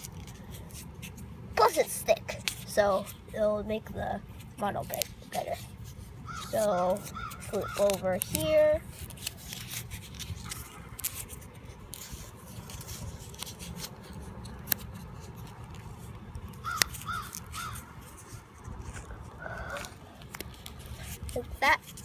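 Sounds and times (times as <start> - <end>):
cardstock rustling and snapping: 2.4 - 3.2, 4.5 - 5.8, 6.4 - 19.1, 19.8 - 22.0.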